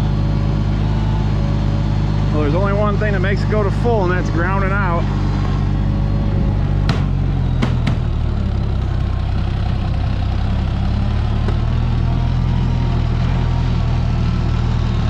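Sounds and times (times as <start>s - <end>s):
tractor engine idling: 0.0s - 15.0s.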